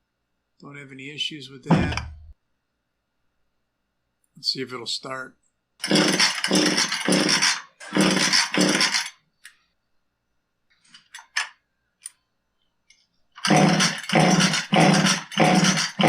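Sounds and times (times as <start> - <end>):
chainsaw pull-start cranking: 5.8 - 9.2, 13.4 - 16.0.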